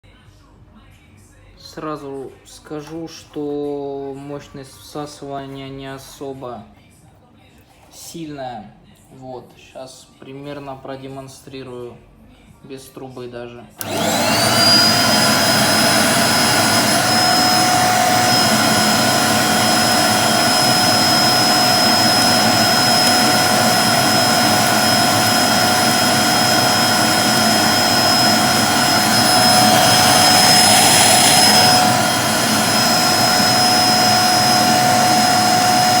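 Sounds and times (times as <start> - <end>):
vacuum cleaner running: 13.8 - 36.0.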